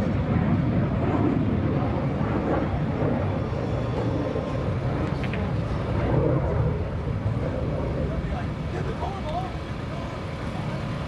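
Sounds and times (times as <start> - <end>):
jet engine rumble overhead: 0.0 - 11.0.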